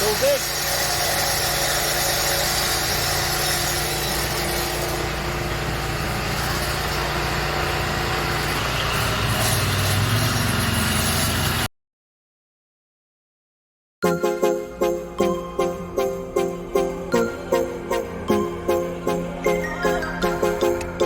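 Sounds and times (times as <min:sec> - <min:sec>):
concrete cutter engine: 0:00.0 - 0:11.7
hiss of cutting concrete: 0:00.0 - 0:11.7.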